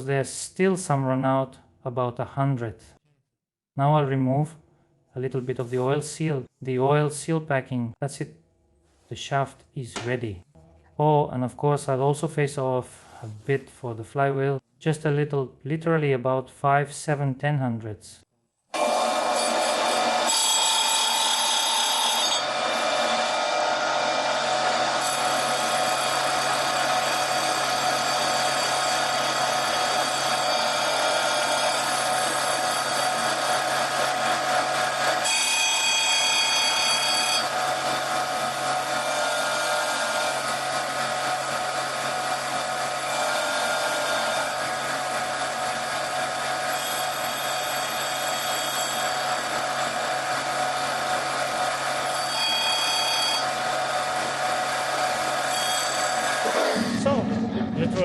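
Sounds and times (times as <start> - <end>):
grinding machine humming and grinding: 22.4 - 35.5
high bright ringing: 52.2 - 53.4.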